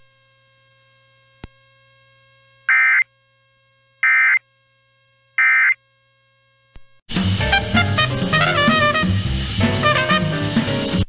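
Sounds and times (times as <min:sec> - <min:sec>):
buzzy digital tone bursts: 0:02.7 - 0:05.8.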